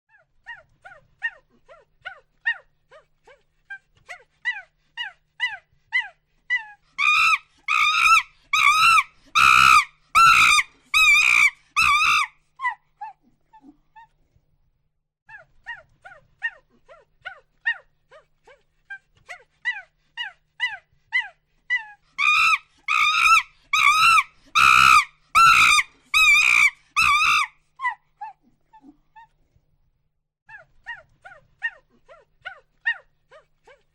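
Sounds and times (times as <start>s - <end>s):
monkey hooting: 6.5s - 12.8s, 21.7s - 28.0s.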